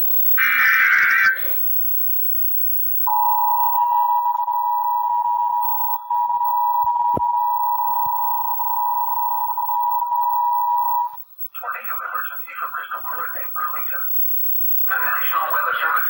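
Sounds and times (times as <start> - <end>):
two-tone alarm: 0.0 - 11.2.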